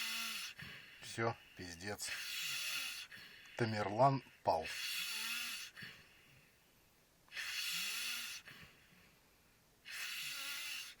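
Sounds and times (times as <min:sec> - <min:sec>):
person snoring with hissing breaths: 0:00.0 - 0:01.1, 0:02.0 - 0:03.7, 0:04.6 - 0:06.0, 0:07.3 - 0:08.7, 0:09.8 - 0:11.0.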